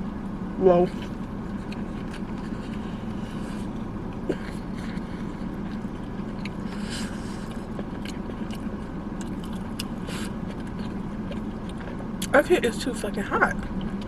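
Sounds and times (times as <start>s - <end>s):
low hum inside car: 0.0s - 14.0s.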